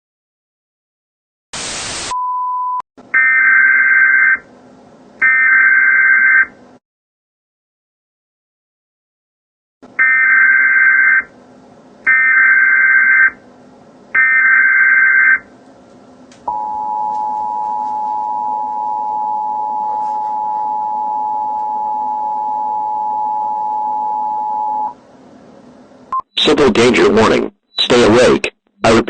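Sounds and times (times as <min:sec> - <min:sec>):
two-tone attention signal: 0:16.5 - 0:24.9.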